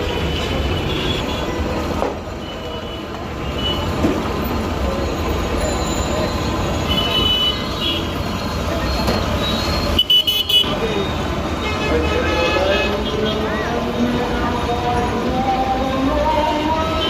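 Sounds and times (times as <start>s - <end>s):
low rumble of engines: 0.0s - 17.0s.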